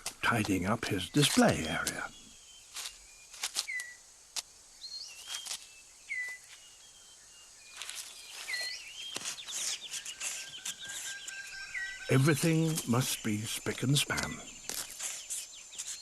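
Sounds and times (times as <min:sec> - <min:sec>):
birds whistling calls: 0:00.0 - 0:04.1, 0:04.8 - 0:16.0
sharp snaps and ticks: 0:00.0 - 0:04.6, 0:12.4 - 0:16.0
bird rattling trill: 0:07.8 - 0:13.1.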